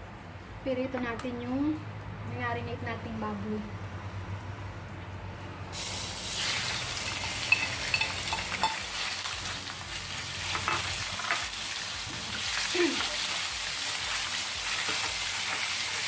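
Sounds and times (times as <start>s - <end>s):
meat sizzling in hot oil: 5.8s - 16.0s
oil crackling and popping: 5.8s - 16.0s.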